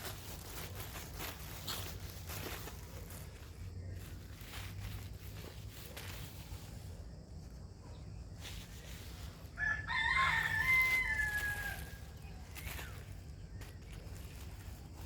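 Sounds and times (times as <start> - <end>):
rooster crowing: 9.4 - 12.3.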